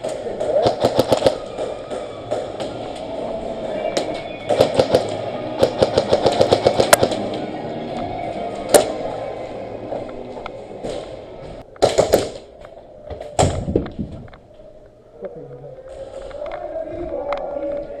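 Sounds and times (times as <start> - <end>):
airsoft guns firing: 0.0 - 2.8, 4.0 - 7.3, 11.8 - 12.6.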